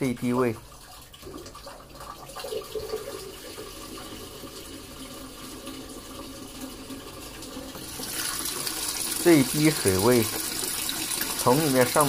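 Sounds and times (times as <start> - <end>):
water running into washing machine: 0.0 - 12.0.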